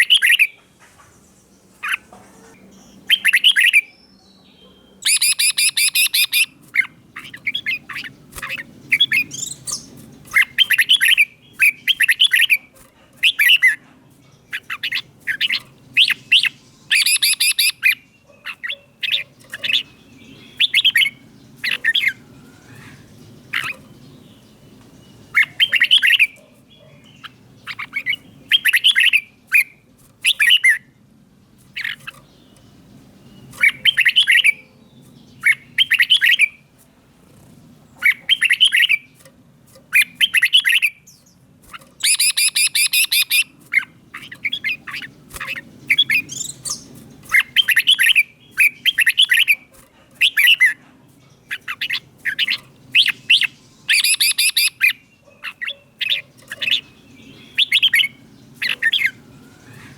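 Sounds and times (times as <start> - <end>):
bird singing whistled phrases: 0.0 - 0.6, 3.1 - 6.5, 14.6 - 18.0, 20.4 - 21.2, 35.5 - 36.6, 42.0 - 43.5, 51.8 - 55.0.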